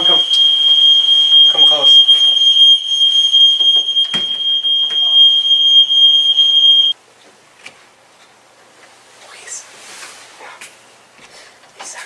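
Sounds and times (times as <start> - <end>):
smoke detector alarm tone: 0.0 - 7.0.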